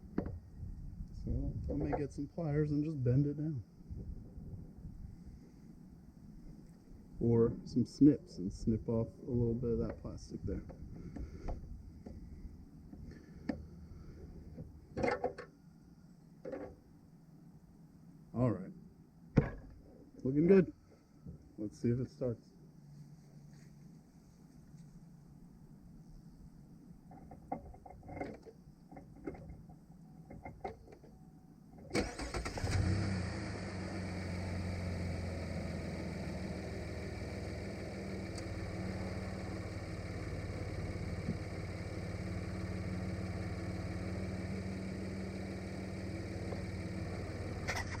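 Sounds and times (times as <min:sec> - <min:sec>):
car engine starting and idling: 0:31.8 - 0:48.0.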